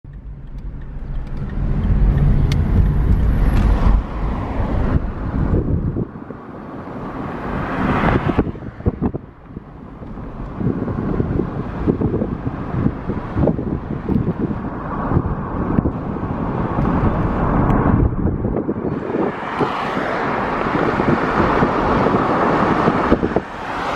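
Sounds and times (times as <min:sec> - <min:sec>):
vehicle rumbling: 0:00.0 - 0:23.9
low thumps: 0:00.1 - 0:06.0
gusty noise: 0:00.1 - 0:23.9.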